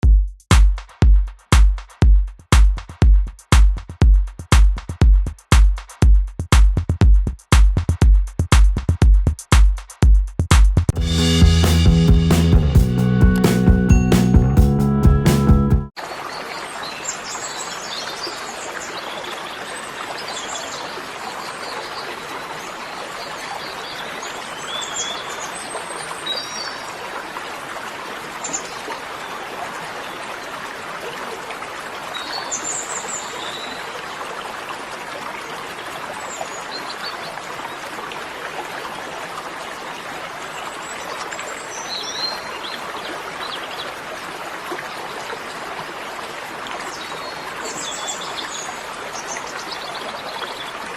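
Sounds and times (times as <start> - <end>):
water rushing: 10.9 - 14.5, 16.0 - 50.9.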